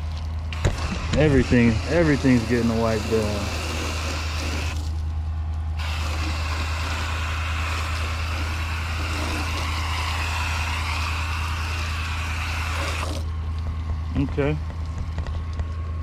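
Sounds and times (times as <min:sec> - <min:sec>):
constant low hum: 0:00.0 - 0:16.0
foam gun spraying hiss: 0:00.6 - 0:04.9, 0:05.8 - 0:13.2.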